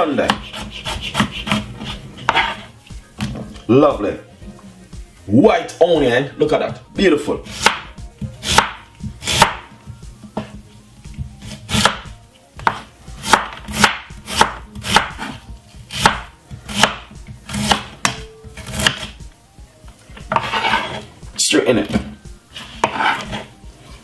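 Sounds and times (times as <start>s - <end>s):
knife chopping onion on board: 0.0s - 3.4s, 7.4s - 9.8s, 11.2s - 19.2s, 20.2s - 21.0s, 21.8s - 23.5s.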